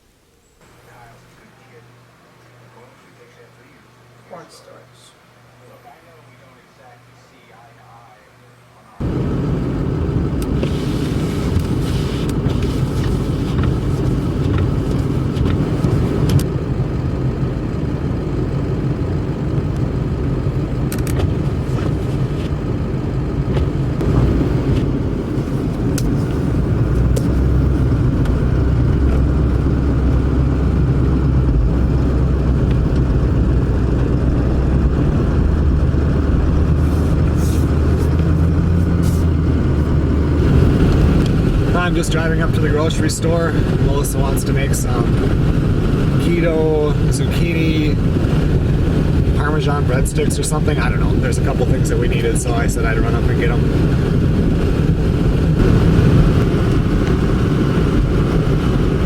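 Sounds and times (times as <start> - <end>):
road noise: 0.0 - 59.0
vehicle engine drone: 0.5 - 59.0.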